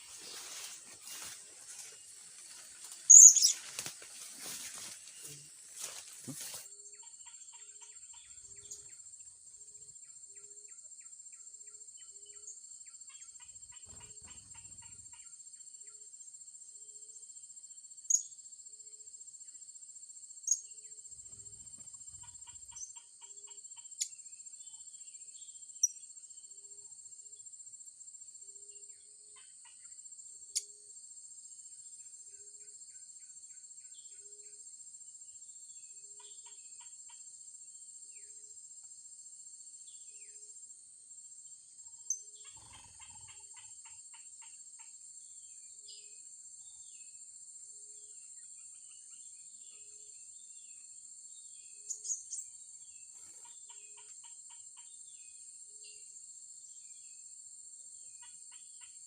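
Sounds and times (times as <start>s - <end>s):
small birds chirping: 0.0s - 9.4s, 12.2s - 15.3s, 21.2s - 24.1s, 41.9s - 44.9s, 51.6s - 55.1s
insects buzzing: 0.0s - 10.6s, 42.0s - 47.2s.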